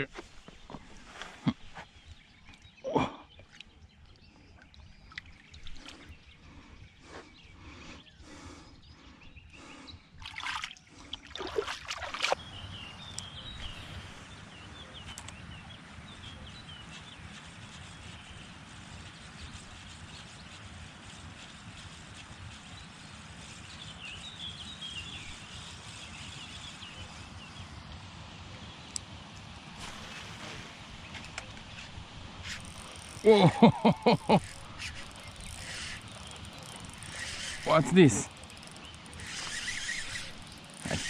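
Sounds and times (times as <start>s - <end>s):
small birds chirping: 0.0s - 41.0s
steady outdoor hiss: 0.0s - 41.0s
water splashing and sloshing: 10.2s - 12.4s.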